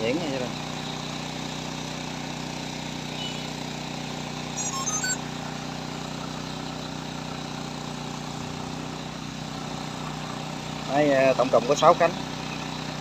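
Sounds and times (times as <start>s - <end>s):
steady motor hum: 0.0s - 13.0s
short high-pitched tones: 4.6s - 5.2s.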